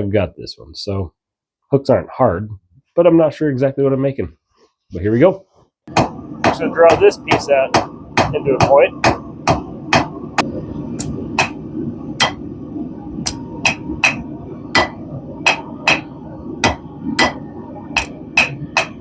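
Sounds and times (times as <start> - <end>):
hammer striking steel on anvil: 5.9 - 10.1, 11.4 - 11.6, 12.2 - 12.4, 13.2 - 17.4, 18.0 - 19.0.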